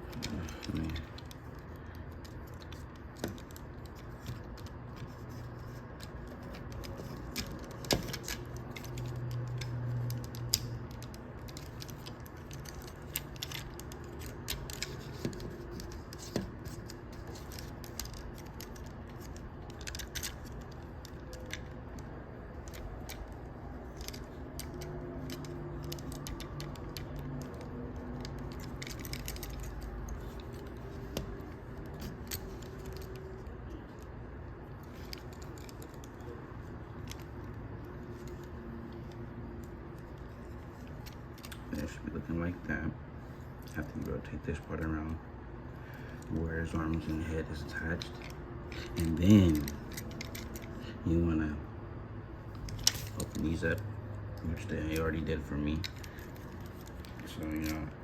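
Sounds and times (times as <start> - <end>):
handling noise: 0.0 - 41.8
plastic parts clicking and snapping: 0.0 - 42.0, 46.0 - 50.8, 52.5 - 53.8.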